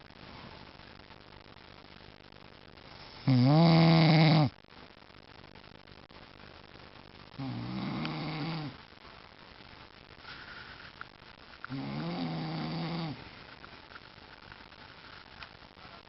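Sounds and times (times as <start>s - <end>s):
man snoring: 3.2s - 4.5s, 7.4s - 8.8s, 11.7s - 13.2s
faint breathing: 10.1s - 14.0s.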